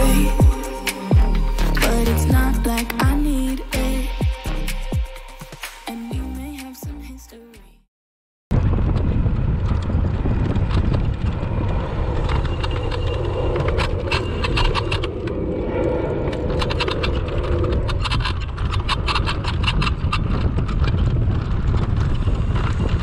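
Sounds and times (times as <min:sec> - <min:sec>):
hum: 0:00.0 - 0:07.2
electric scooter rumbling: 0:08.6 - 0:23.0
scooter frame rattling: 0:16.4 - 0:23.0.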